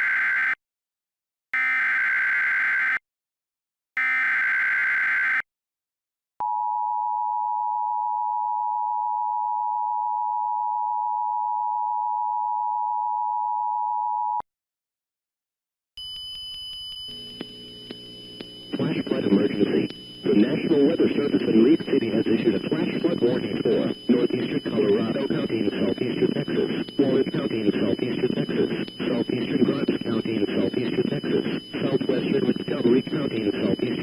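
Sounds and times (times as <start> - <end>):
steady hum with high tones: 16.0 - 34.0
digital data screech: 18.8 - 34.0.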